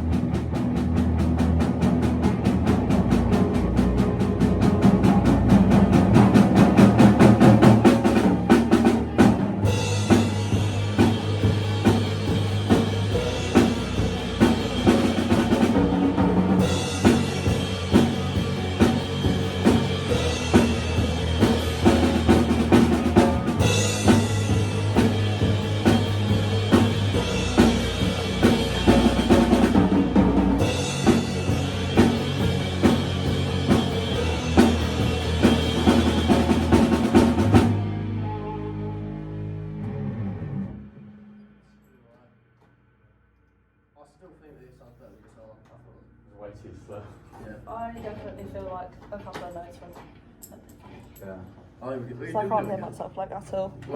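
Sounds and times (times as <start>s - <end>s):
drum kit beat: 0.0s - 40.0s
live band playing: 0.0s - 41.1s.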